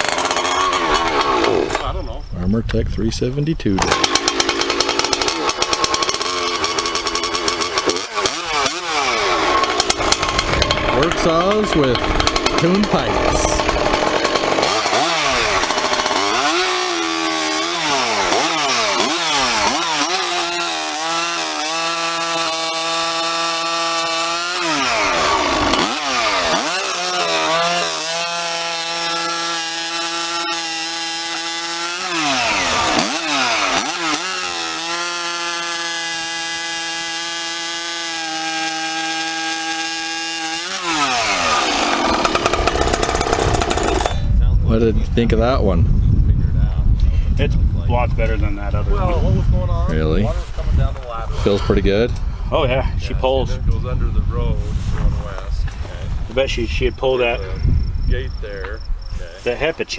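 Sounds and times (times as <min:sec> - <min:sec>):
chainsaw cutting wood: 0:00.0 - 0:02.0, 0:03.8 - 0:44.3
chainsaw engine revving: 0:00.0 - 0:02.0, 0:03.8 - 0:44.3.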